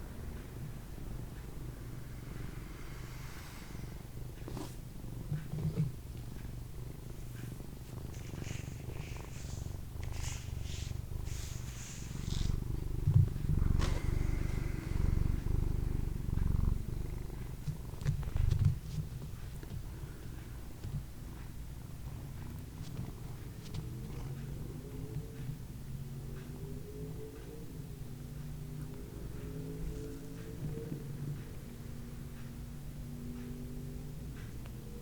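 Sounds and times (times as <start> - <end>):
cat purring: 0.3 - 34.8
soft rustles: 4.4 - 6.5, 7.1 - 14.7.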